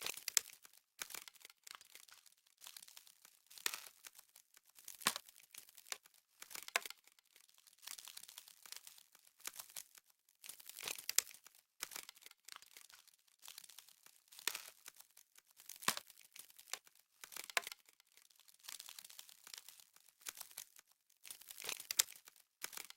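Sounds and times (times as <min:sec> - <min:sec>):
dry crackling and crinkling: 0:00.0 - 0:22.9.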